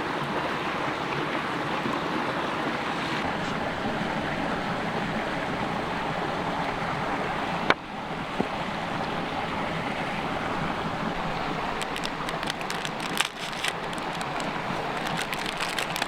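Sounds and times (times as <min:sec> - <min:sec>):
mountain creek flowing: 0:00.0 - 0:16.0.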